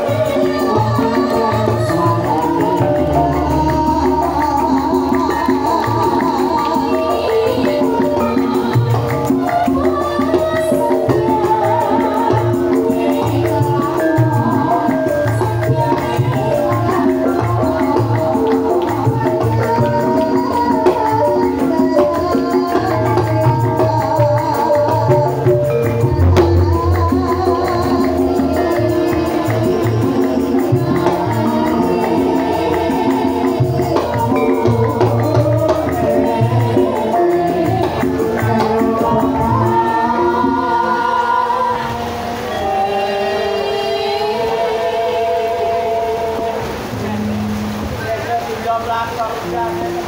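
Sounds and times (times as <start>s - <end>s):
hand drum beat: 0.0s - 48.5s
metallophone melody: 23.4s - 41.3s.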